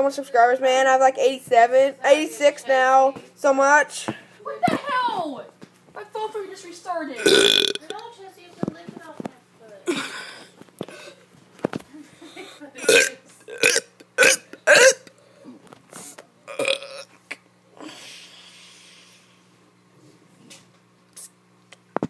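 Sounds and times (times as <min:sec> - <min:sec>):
child burping: 0:07.2 - 0:08.0, 0:09.8 - 0:11.2, 0:12.8 - 0:15.1, 0:16.5 - 0:17.4.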